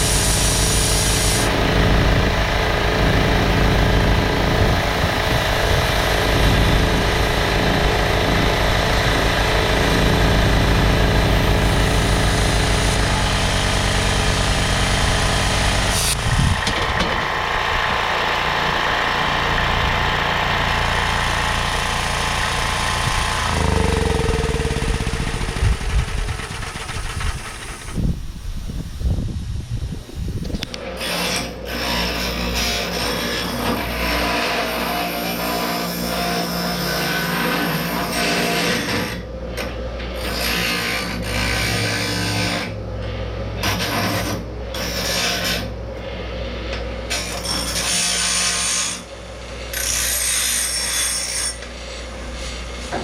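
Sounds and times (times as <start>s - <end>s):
angle grinder whining: 0.0s - 28.2s.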